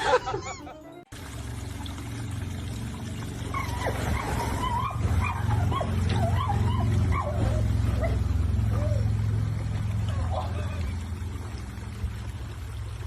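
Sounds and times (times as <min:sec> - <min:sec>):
dog whining and yipping: 0:03.5 - 0:09.1.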